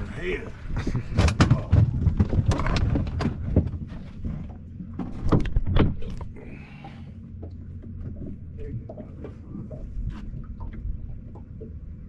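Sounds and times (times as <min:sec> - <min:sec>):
gear knocking and clattering: 0:00.9 - 0:06.1
steady low hum: 0:03.3 - 0:12.0.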